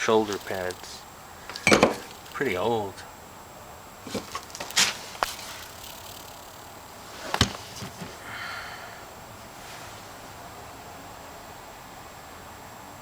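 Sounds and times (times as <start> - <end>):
objects clattering in wooden trunk: 1.5 - 2.5, 4.0 - 5.7, 7.2 - 8.2.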